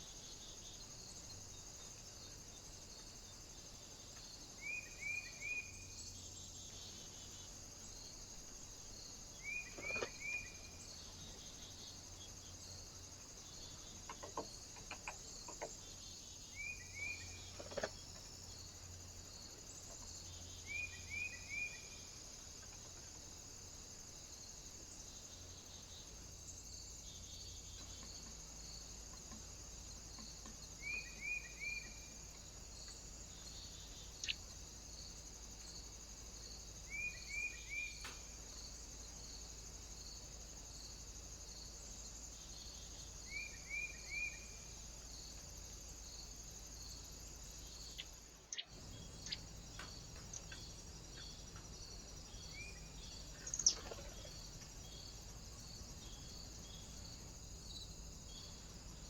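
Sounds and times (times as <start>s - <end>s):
steady high hiss: 18.2s - 59.0s.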